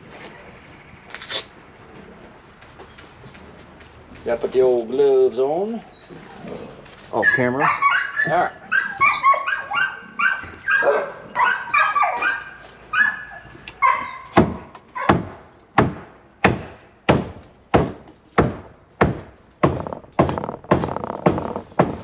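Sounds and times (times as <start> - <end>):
animal yelping: 5.8 - 14.3
mallet hammering wood: 14.4 - 22.0.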